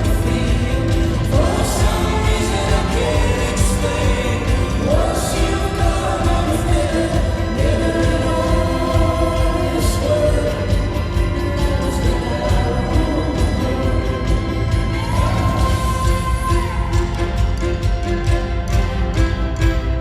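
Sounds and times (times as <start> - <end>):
voices singing together: 0.0 - 17.4
live band playing: 0.0 - 20.0.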